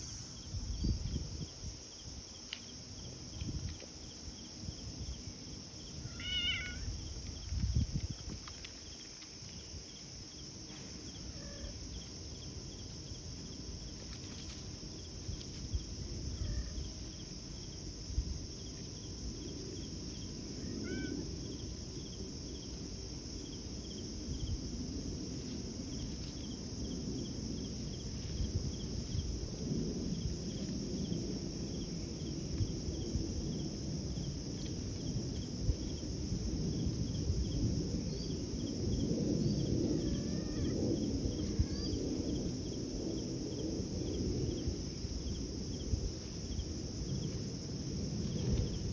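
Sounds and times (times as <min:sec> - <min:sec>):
crickets chirping: 0:00.0 - 0:48.9
cat meowing: 0:06.0 - 0:06.9, 0:20.6 - 0:21.1, 0:40.0 - 0:40.8.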